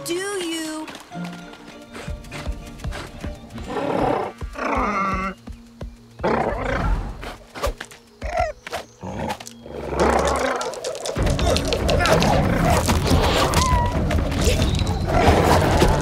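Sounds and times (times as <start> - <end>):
cartoon background music: 6.2 - 16.0.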